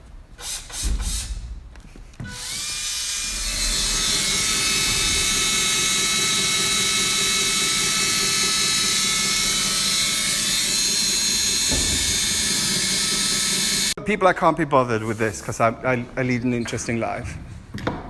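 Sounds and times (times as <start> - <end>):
electric drill motor spinning: 2.2 - 14.0.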